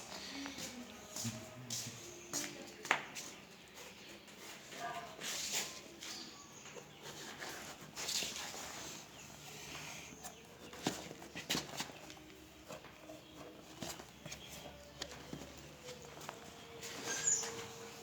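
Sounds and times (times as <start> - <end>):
shuffling footsteps: 0.0 - 18.0
chickens calling: 13.0 - 18.0.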